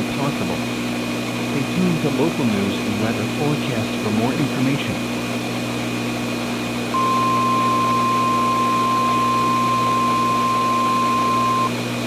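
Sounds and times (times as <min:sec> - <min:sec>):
low hum and hiss: 0:00.0 - 0:11.8
emergency alert tone: 0:07.0 - 0:11.7.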